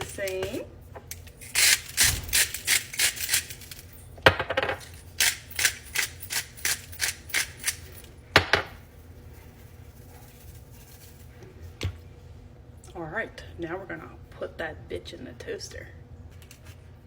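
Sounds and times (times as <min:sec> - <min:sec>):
seasoning shakers shaken: 0:00.0 - 0:00.6, 0:04.8 - 0:08.1, 0:08.8 - 0:11.8.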